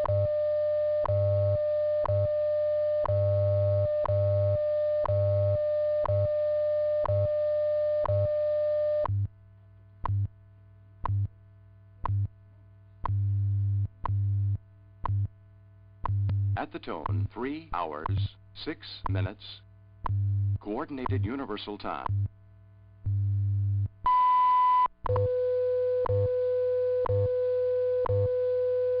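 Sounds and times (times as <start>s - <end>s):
low time code pulsing: 16.0s - 22.3s.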